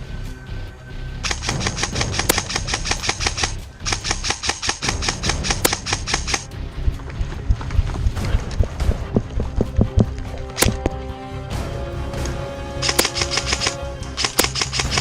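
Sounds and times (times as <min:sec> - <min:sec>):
airsoft gun full-auto bursts: 0:01.3 - 0:06.4.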